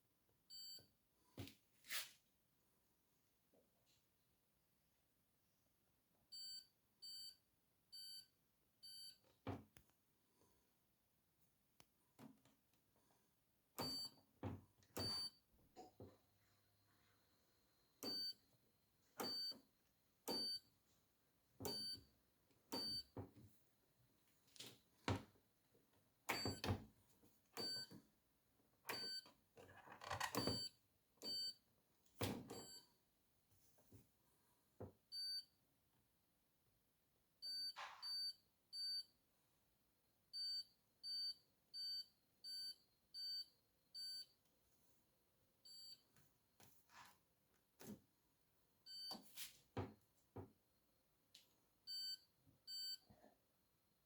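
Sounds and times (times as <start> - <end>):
washing machine panel beeps: 8.8 - 9.2, 13.8 - 14.2, 15.0 - 15.4, 17.7 - 18.5, 19.2 - 19.6, 20.3 - 20.7, 21.6 - 22.1, 22.7 - 23.2, 26.3 - 26.8, 27.6 - 27.9, 28.9 - 29.3, 30.4 - 31.6, 51.9 - 53.1.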